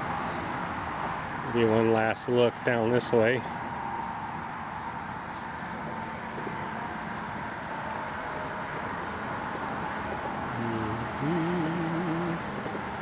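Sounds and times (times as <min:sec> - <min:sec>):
distant road traffic hum: 0:00.0 - 0:13.0
short wavering pitched call: 0:10.6 - 0:12.4.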